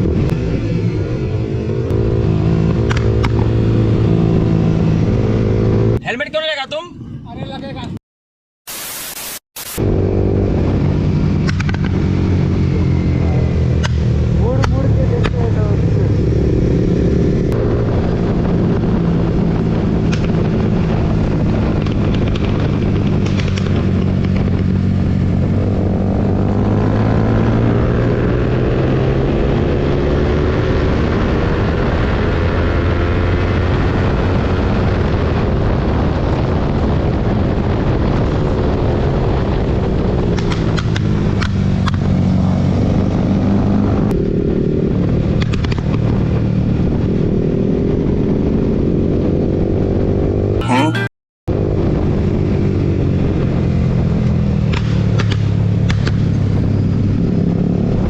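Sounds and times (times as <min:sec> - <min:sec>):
motorcycle engine revving: 0:00.0 - 0:06.0, 0:09.8 - 0:36.2, 0:37.6 - 0:50.6
wind rush: 0:09.6 - 0:29.8, 0:31.0 - 0:50.5.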